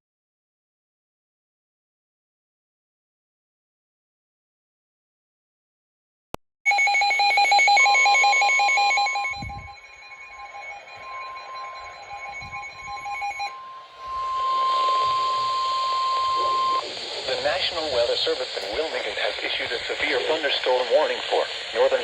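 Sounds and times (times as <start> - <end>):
long steady high alarm tone: 6.7 - 22.0
warbling data tones: 6.7 - 22.0.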